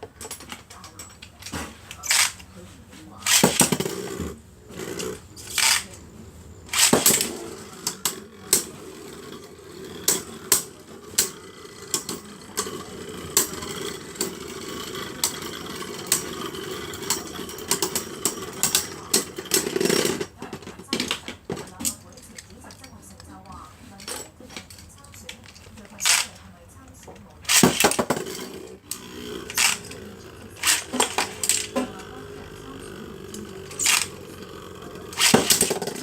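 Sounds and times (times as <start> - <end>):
spinning tops whirring: 6.7 - 20.3, 26.0 - 26.4, 27.4 - 36.0
spinning tops clattering: 27.5 - 36.0
tops clicking against each other: 27.5 - 36.0.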